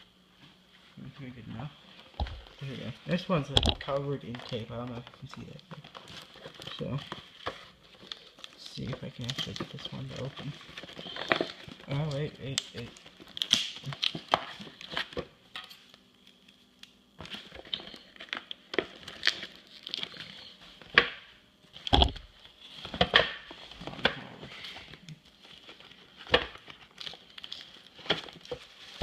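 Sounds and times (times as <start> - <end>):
envelope crinkling and tearing: 2.6 - 15.2, 17.2 - 20.6, 24.9 - 29.0.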